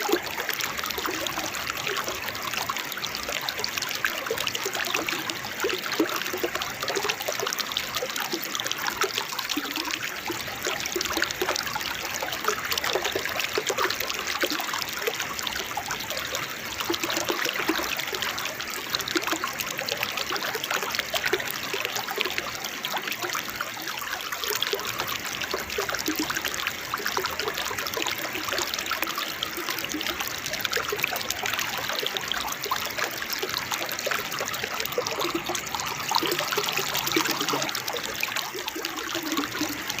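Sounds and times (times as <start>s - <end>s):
waterfall splashing over rocks: 24.2s - 40.0s.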